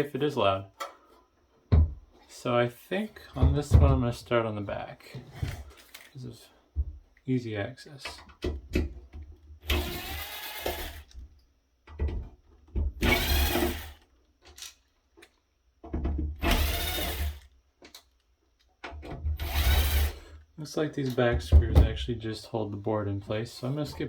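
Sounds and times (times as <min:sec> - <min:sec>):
power drill backing out screws: 0:13.0 - 0:14.0, 0:16.4 - 0:17.5, 0:19.4 - 0:20.3.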